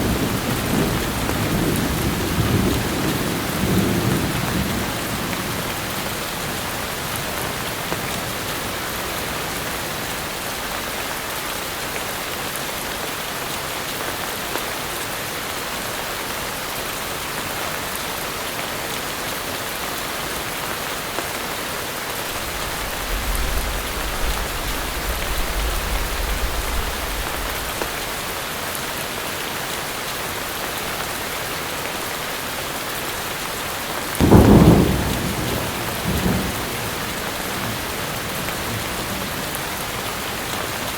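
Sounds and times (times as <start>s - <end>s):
heavy rain: 0.0s - 40.9s
thunder rumbling: 22.2s - 28.4s, 34.2s - 39.5s
loud thunderclap: 22.3s - 28.4s, 34.2s - 39.0s.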